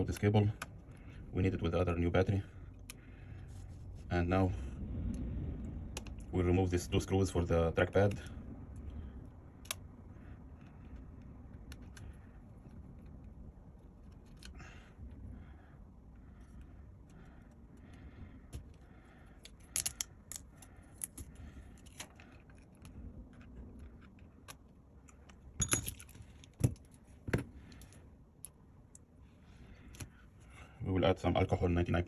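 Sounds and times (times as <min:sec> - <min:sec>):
small tools clicking on metal case: 0:19.4 - 0:27.0.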